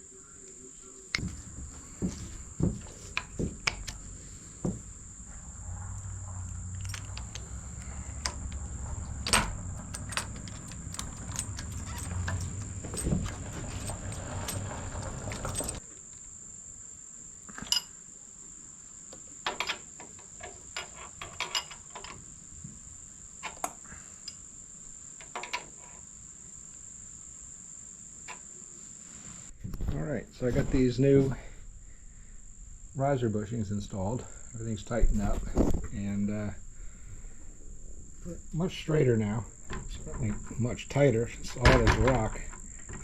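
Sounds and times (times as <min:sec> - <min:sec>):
low hum: 0:00.0 - 0:15.8, 0:29.6 - 0:42.1
steady high-pitched whine: 0:26.4 - 0:43.0.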